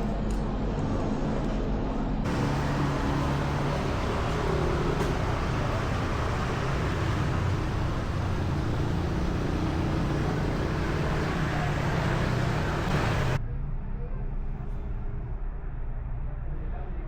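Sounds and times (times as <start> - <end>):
road noise: 2.2 - 13.4
vehicle engines running: 2.2 - 13.4.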